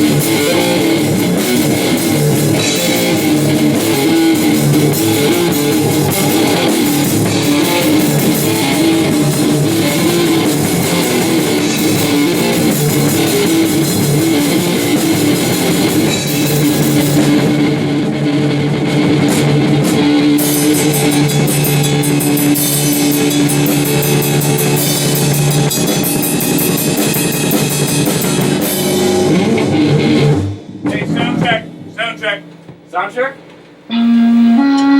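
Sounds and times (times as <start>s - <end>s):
cymbals ticking: 0.0s - 17.4s
electric guitar: 0.0s - 32.0s, 33.8s - 34.9s
rock drum kit: 0.0s - 34.9s.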